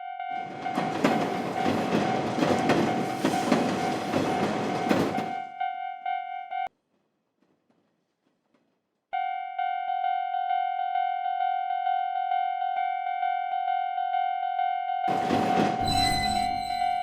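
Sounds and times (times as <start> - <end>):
train wheels clattering: 0.4 - 5.5, 15.1 - 17.0
railroad crossing bell ringing: 4.1 - 6.7, 15.8 - 17.0.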